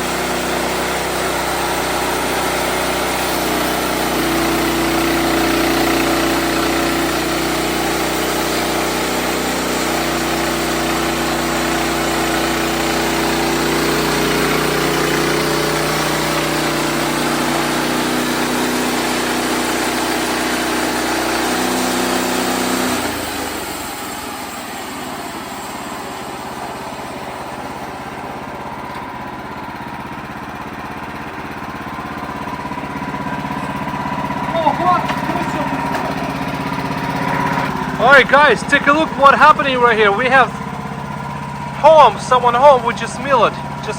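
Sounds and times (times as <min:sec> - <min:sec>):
bandsaw sawing through log: 0:00.0 - 0:28.8, 0:32.5 - 0:43.9.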